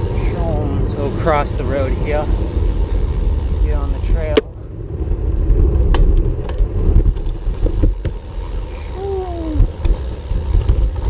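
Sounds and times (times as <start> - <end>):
wind rumbling on microphone: 0.0 - 11.0.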